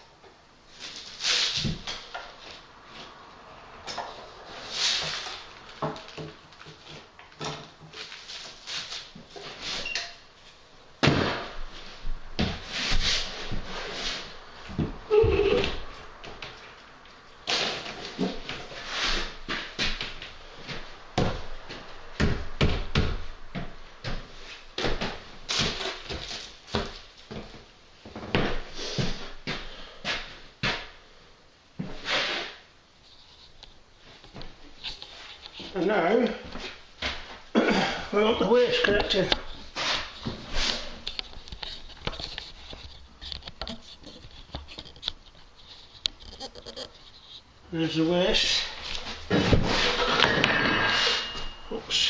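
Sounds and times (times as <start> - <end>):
hard objects knocking and clunking: 5.7 - 8.0.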